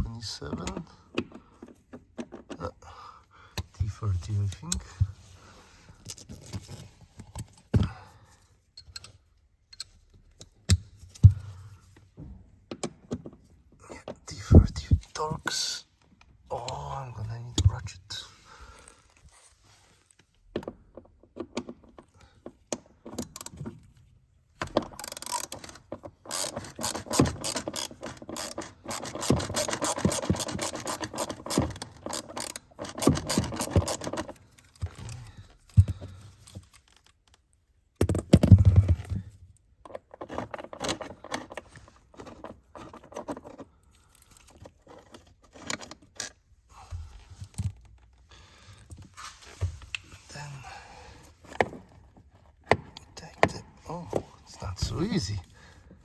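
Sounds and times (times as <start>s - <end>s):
ratchet clicking: 25.0s - 34.2s.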